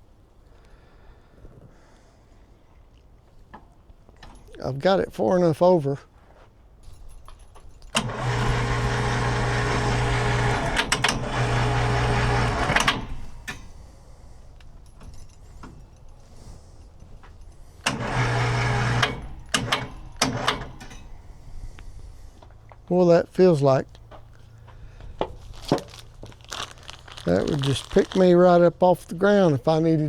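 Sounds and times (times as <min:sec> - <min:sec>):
sharp clicks: 0:07.8 - 0:13.8, 0:17.4 - 0:21.9
electric winch motor running: 0:07.9 - 0:22.6.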